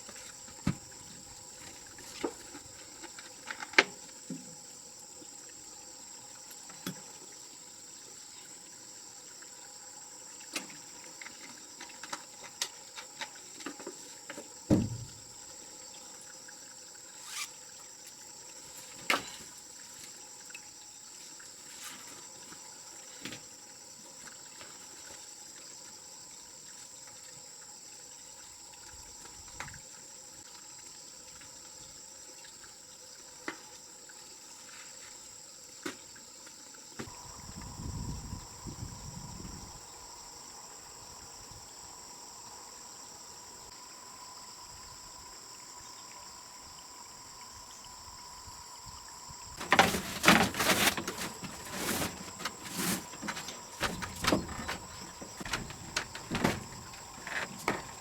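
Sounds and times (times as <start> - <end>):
heavy thump: 14.7 - 15.2, 49.6 - 58.0
light clicks and knocks: 49.6 - 58.0.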